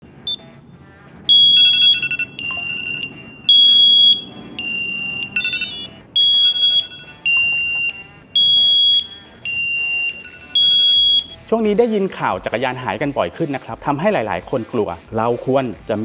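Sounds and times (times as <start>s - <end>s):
bike alarm siren beeping: 1.2s - 11.4s
rapid electronic chirping: 1.3s - 11.5s.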